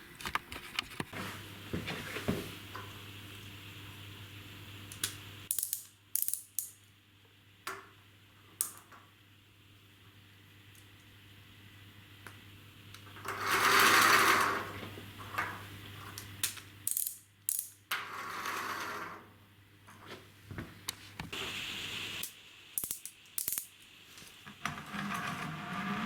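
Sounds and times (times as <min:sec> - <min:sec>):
plastic gear train whirring: 0:13.2 - 0:14.8
toy car clicks and knocks: 0:22.8 - 0:23.7.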